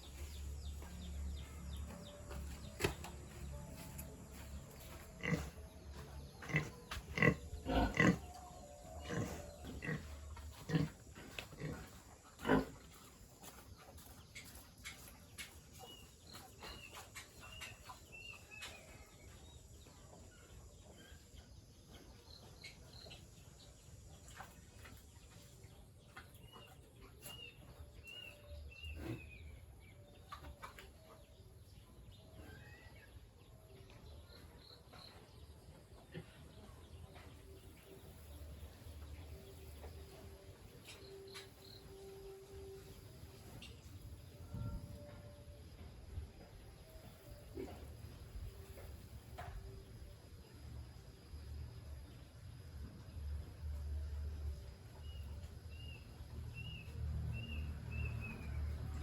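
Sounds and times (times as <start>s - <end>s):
pigs grunting: 5.2s - 13.0s.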